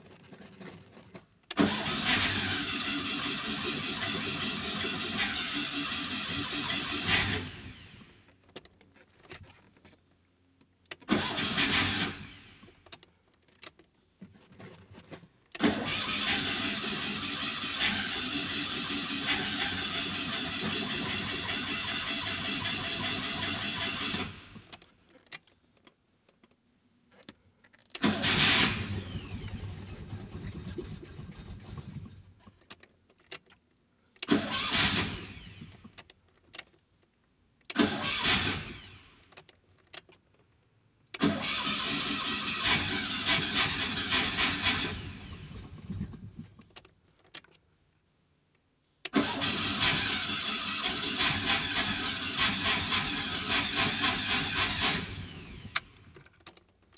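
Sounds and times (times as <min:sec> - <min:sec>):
car engine cranking on starter: 0:01.5 - 0:08.2, 0:10.9 - 0:12.8, 0:15.5 - 0:24.7, 0:27.9 - 0:32.4, 0:34.2 - 0:36.0, 0:37.7 - 0:39.2, 0:41.1 - 0:46.6, 0:49.0 - 0:56.3.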